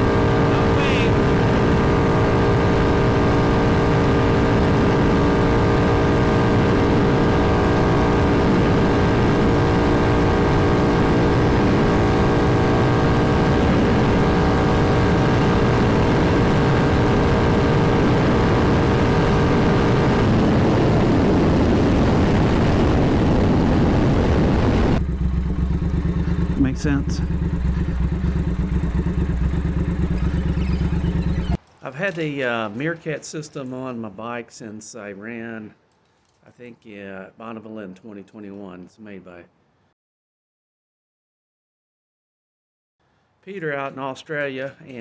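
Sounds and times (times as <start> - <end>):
motorcycle engine at high revs: 0.0 - 31.6
wind rush: 15.3 - 25.0.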